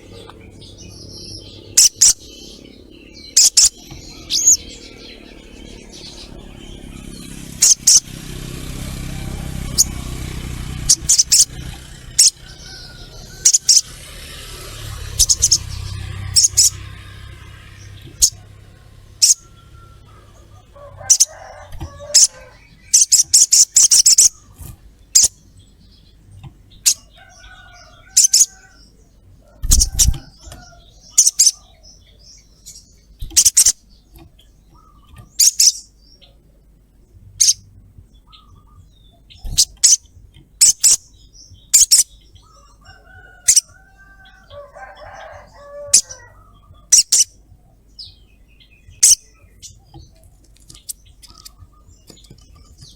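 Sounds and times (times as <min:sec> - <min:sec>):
bird giving sharp high calls: 0:01.7 - 0:02.6, 0:05.9 - 0:24.5, 0:45.0 - 0:47.4.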